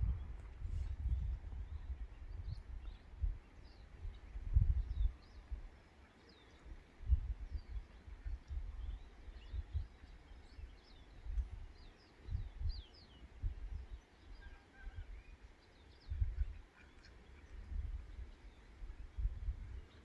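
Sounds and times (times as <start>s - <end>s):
wind buffeting microphone: 0.0s - 5.8s, 6.7s - 15.4s, 16.0s - 20.0s
small birds chirping: 0.0s - 20.0s.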